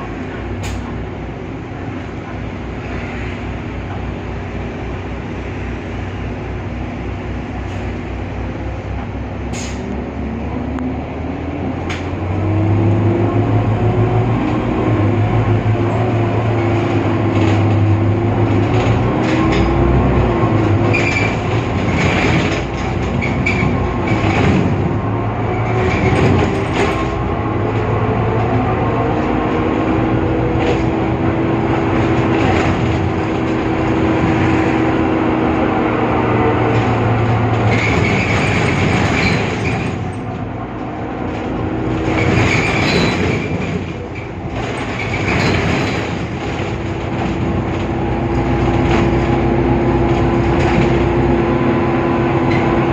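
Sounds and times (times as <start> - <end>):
bus engine running: 0.0 - 52.9
engine whine: 0.0 - 52.9.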